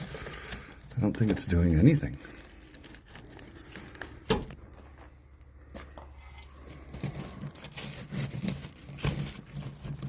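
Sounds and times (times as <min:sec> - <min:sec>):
clicks and handling noises: 0:00.0 - 0:10.0.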